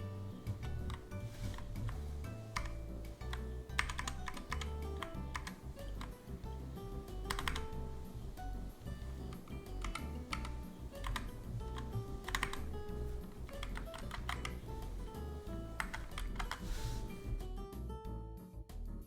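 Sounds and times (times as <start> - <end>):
background music: 0.0 - 19.0
mechanical keyboard key clicks: 2.6 - 6.2, 7.3 - 7.7, 9.3 - 12.7, 13.5 - 14.7, 15.8 - 16.6.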